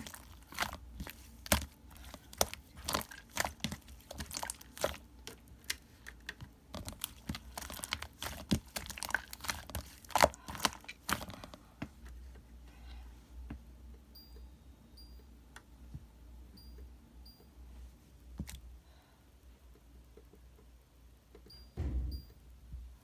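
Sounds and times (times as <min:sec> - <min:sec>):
clicks and crinkling handling noises: 0:00.0 - 0:13.6, 0:18.4 - 0:18.6
short high beeps: 0:21.6 - 0:22.4.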